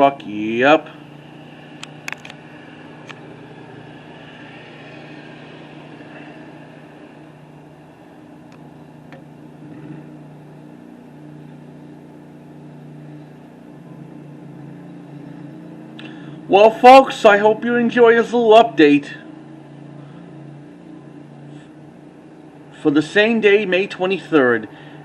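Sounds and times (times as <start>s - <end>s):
diesel truck engine running: 0.0s - 25.0s.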